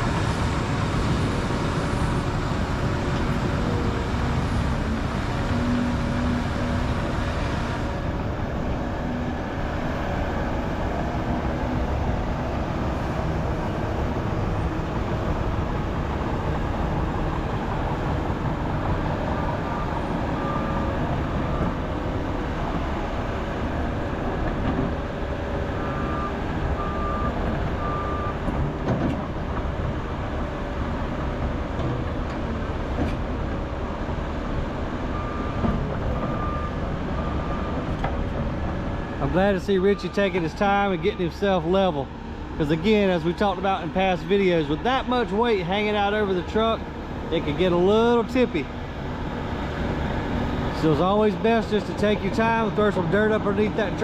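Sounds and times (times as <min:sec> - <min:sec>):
heavy diesel machinery running: 0:00.0 - 0:54.0
reversing alarm beeps: 0:19.7 - 0:21.8, 0:25.8 - 0:28.4, 0:36.3 - 0:37.9.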